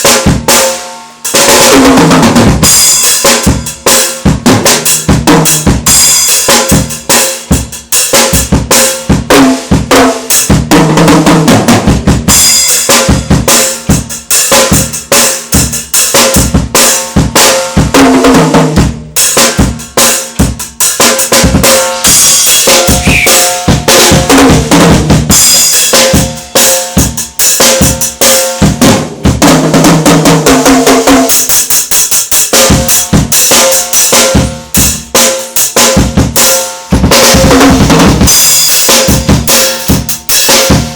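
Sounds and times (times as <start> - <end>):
snare drum: 0.0 - 40.9
cymbals: 2.6 - 10.6, 18.8 - 29.5, 30.8 - 40.9
sustained pitched notes: 22.4 - 23.9.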